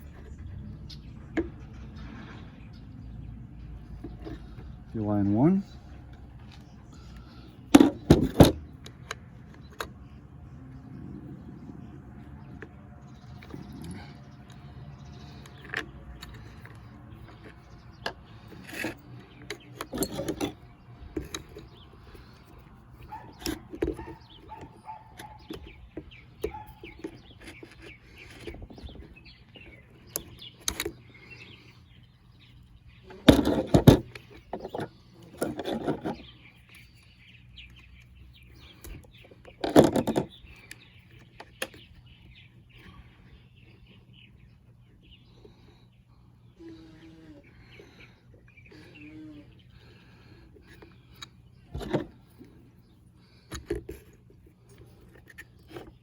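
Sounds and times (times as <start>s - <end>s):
birds chirping faintly: 0.0s - 56.0s.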